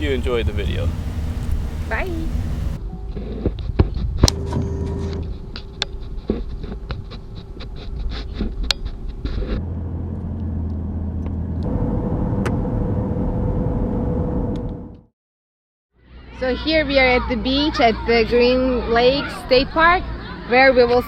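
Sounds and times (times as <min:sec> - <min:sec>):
car engine and road rumble: 0:00.0 - 0:15.1.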